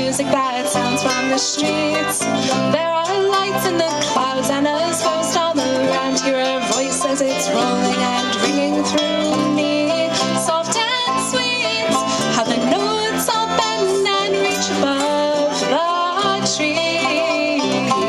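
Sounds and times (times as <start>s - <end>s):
strummed ukulele: 0.0s - 18.0s
wavering melody line: 0.0s - 18.0s.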